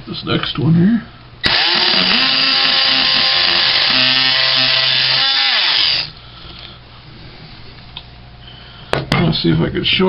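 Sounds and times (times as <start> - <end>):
oscillating multi-tool cutting metal: 1.4 - 6.1
tool winding down: 1.4 - 6.1.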